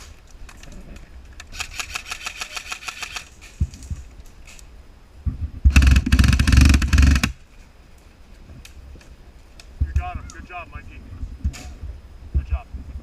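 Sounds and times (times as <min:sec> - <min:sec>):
airsoft guns firing full auto: 0:01.5 - 0:03.3, 0:05.7 - 0:07.4.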